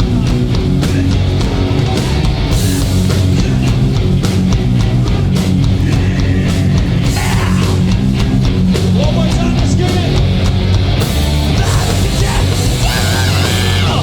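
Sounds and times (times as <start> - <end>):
punk band playing live: 0.0 - 14.0
person shouting: 7.1 - 7.9, 11.6 - 14.0.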